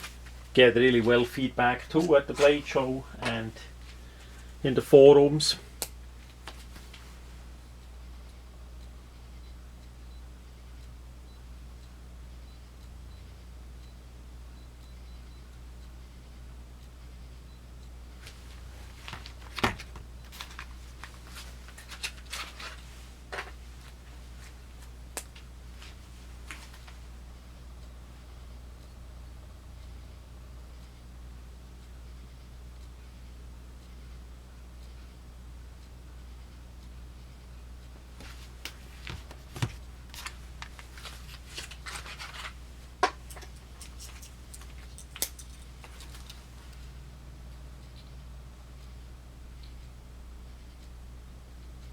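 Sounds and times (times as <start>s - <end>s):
steady low hum: 0.0s - 51.9s
sharp snaps: 5.8s - 6.6s, 25.1s - 25.5s
pocket knives clicking: 43.3s - 45.6s.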